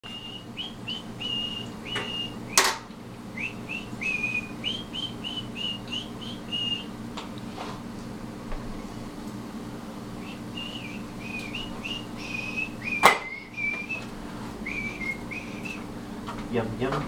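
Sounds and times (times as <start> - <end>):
person whistling a tune: 0.0 - 2.6, 3.4 - 6.9, 10.2 - 15.8.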